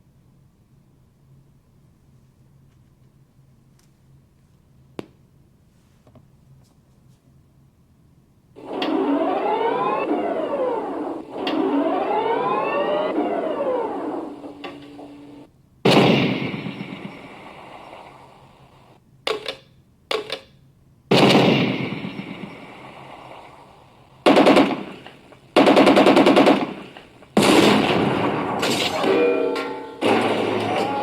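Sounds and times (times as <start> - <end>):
cannon shot: 8.6 - 19.0, 21.1 - 29.3, 29.9 - 31.0
machine-gun bursts: 21.1 - 29.1.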